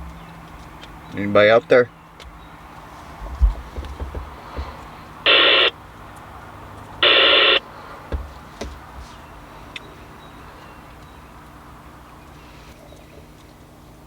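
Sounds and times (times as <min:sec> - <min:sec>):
faint low thumps: 0:03.2 - 0:04.8
radio static bursts: 0:05.3 - 0:05.8, 0:07.0 - 0:07.6.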